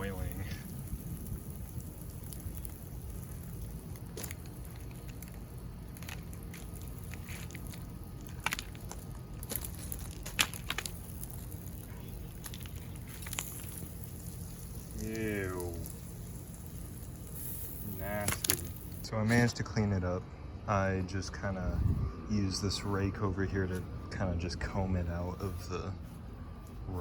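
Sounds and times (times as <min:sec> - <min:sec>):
melted plastic crackling and popping: 0:00.0 - 0:19.1
steady low rumble: 0:00.0 - 0:27.0.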